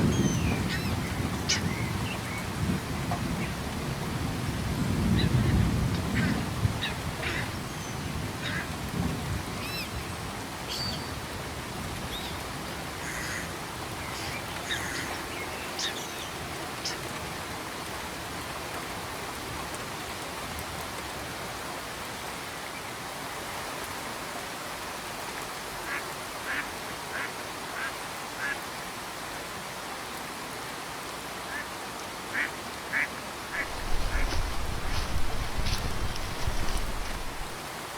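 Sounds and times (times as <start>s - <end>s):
bird calls: 0.0s - 2.4s, 5.1s - 8.7s, 13.0s - 17.1s, 33.6s - 37.6s
steady rain falling: 0.0s - 37.9s.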